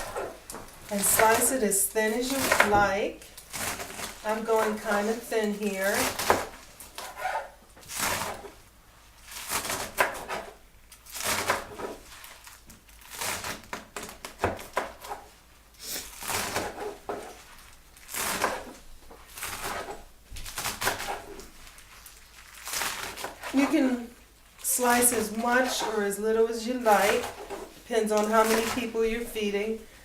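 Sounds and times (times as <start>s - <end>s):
knife chopping on cutting board: 9.5s - 10.5s.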